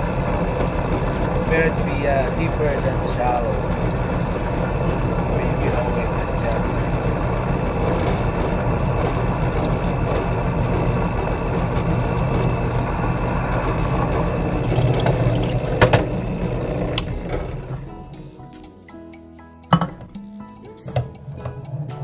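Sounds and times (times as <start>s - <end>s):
drill press drilling metal: 0.0s - 13.2s, 13.9s - 17.9s.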